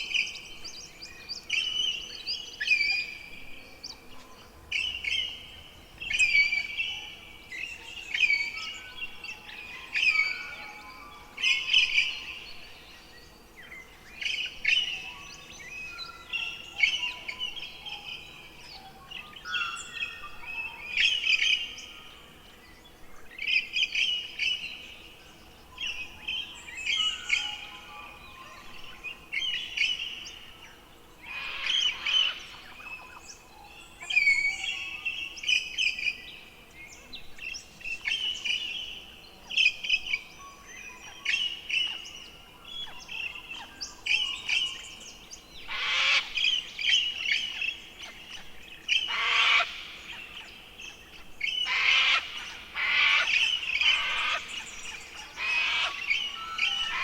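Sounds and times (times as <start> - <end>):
songbirds singing: 0.0 - 57.0
harsh rasping bird calls: 45.6 - 50.4, 51.0 - 57.0.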